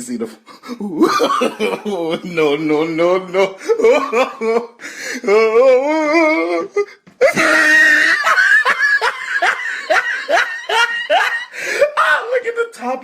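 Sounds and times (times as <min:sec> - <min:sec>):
person laughing loudly: 0:00.6 - 0:12.2.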